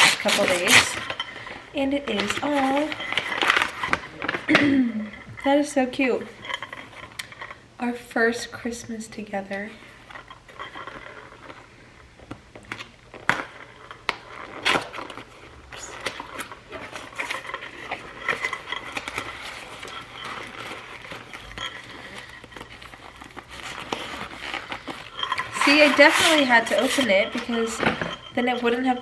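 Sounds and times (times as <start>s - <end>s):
paper and packaging crinkling: 0.0s - 5.2s, 12.6s - 29.0s.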